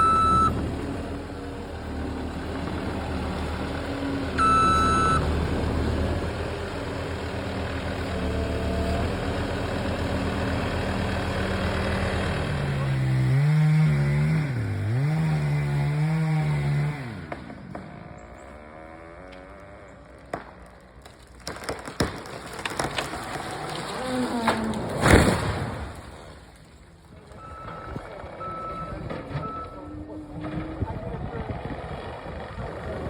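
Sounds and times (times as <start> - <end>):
chainsaw running: 0.0 - 24.9, 30.5 - 33.0
wood cracking and snapping: 20.1 - 26.8.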